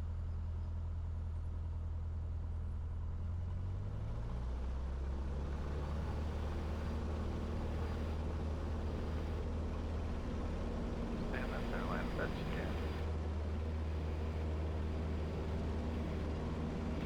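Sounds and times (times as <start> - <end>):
propeller plane engine: 5.4 - 17.0.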